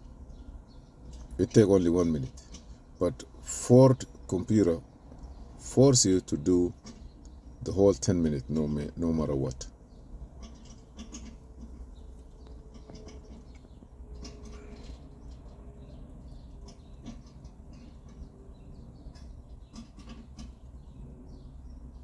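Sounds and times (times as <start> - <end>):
low steady hum: 0.0 - 22.0
faint clicks and ticks: 6.8 - 7.4.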